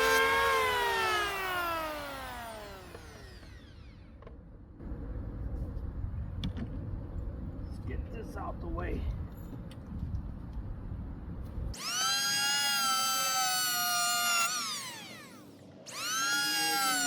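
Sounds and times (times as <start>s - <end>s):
electric hand planer whining: 0.0s - 4.2s, 11.8s - 17.0s
low rumbling noise: 0.0s - 11.8s.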